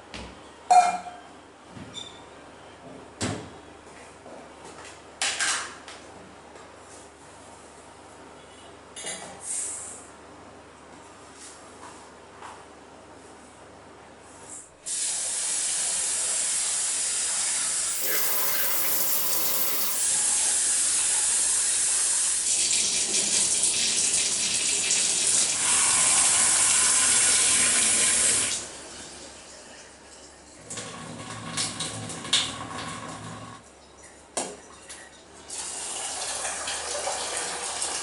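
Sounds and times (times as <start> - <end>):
tap water running into sink: 17.9 - 20.1.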